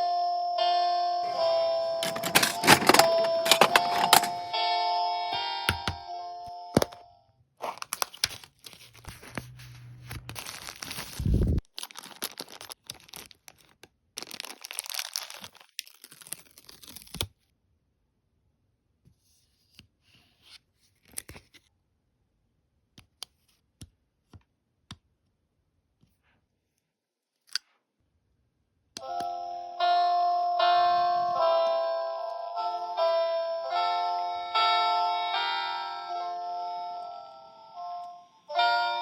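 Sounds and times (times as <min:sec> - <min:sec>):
plastic wrapping tearing and crinkling: 0:07.6 - 0:17.3.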